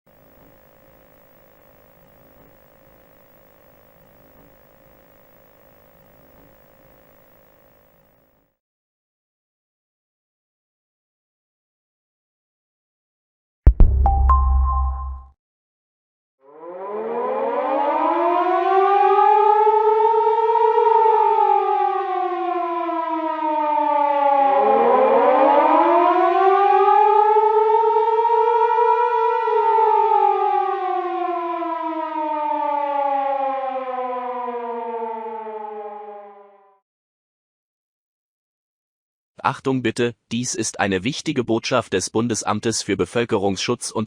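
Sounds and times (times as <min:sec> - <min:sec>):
warning siren wailing: 0:16.4 - 0:36.8.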